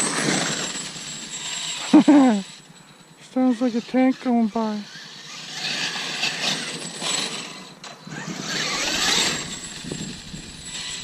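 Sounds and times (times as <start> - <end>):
rc truck rumbling past: 0.0 - 11.0.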